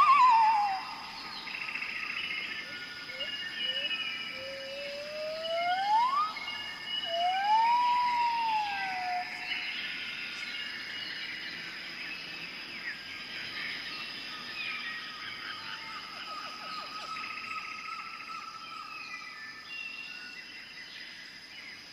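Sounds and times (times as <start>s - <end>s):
loud sliding whistled calls: 0.0s - 1.0s
high insect drone: 0.0s - 21.9s.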